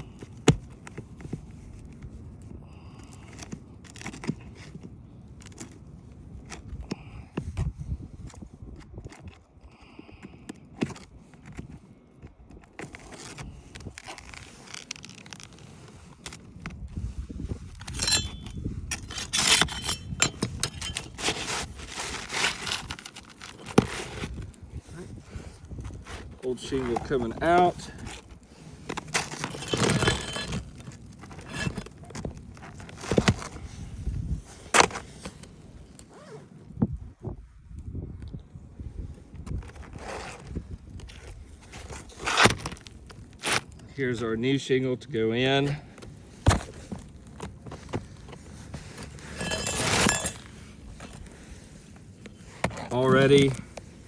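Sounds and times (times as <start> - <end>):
scraper scraping roof shingles: 12.8 - 36.4, 39.6 - 43.9, 45.6 - 54.0.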